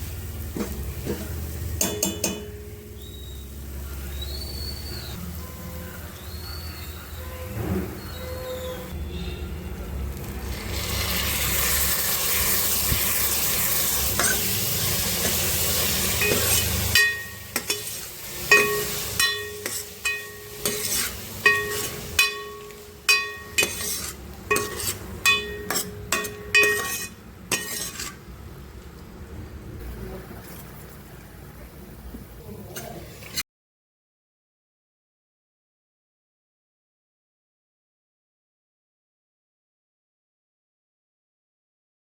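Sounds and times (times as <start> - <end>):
food sizzling in a pan: 10.4 - 28.2
metal spoon scraping a pot: 10.8 - 28.2.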